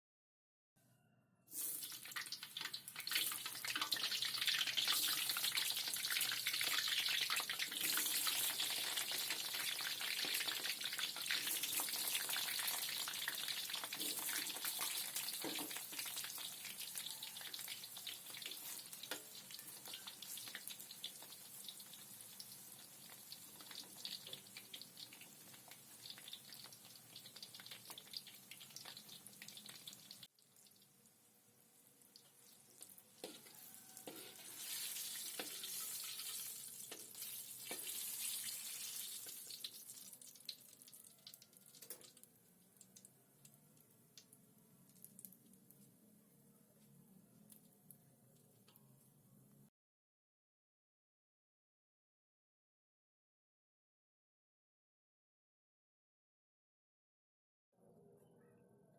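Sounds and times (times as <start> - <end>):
food frying in hot oil: 1.5 - 42.3.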